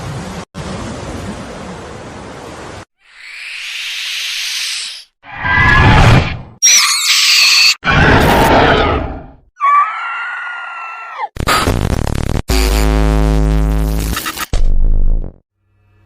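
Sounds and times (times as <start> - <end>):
drawn-out wailing cry: 9.6 - 11.3.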